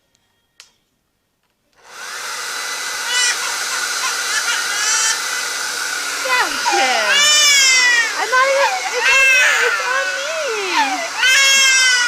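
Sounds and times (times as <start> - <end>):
hair dryer blowing: 1.8 - 12.0
baby crying: 3.0 - 5.4, 6.2 - 12.0.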